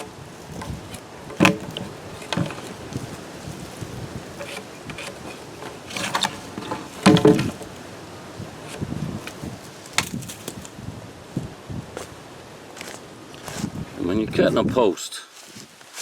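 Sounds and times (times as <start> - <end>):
wooden posts knocking: 0.0 - 10.7.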